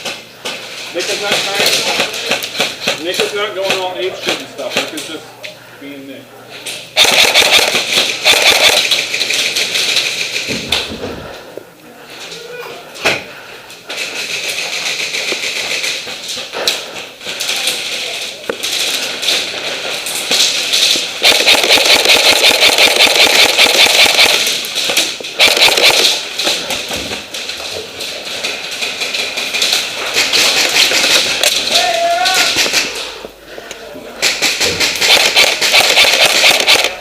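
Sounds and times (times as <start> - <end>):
airsoft guns firing bursts: 1.0 - 4.9, 7.0 - 10.5, 14.0 - 16.1, 18.7 - 26.8, 28.4 - 31.7, 32.5 - 33.0, 34.2 - 37.0.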